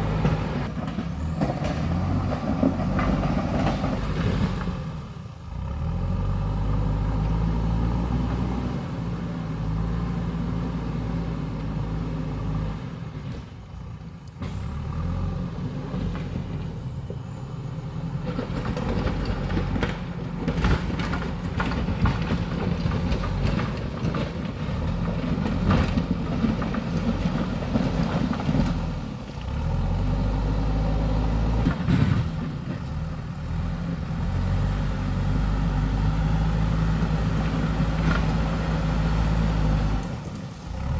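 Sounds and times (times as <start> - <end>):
diesel engine under load: 0.0 - 40.9
knocks and clatter: 18.2 - 29.0.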